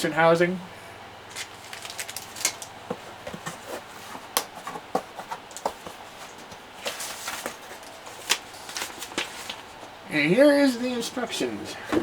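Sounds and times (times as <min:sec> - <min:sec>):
plastic clicks and crinkles: 0:01.3 - 0:02.7.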